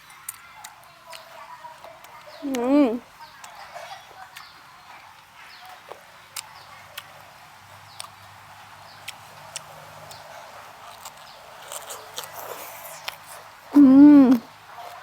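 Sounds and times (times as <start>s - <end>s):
wet mouth chewing clicks: 0.1s - 3.6s, 7.8s - 15.0s.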